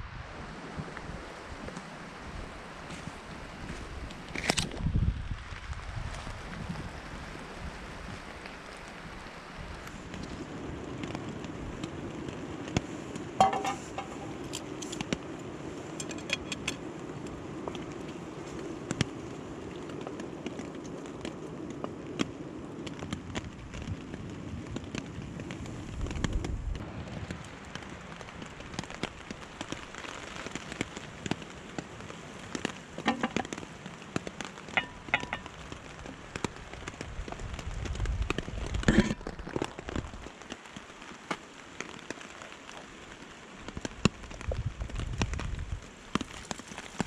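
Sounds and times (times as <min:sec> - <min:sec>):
rain falling: 0:00.0 - 0:47.0
knocks and rustles: 0:13.4 - 0:15.1, 0:33.0 - 0:33.6.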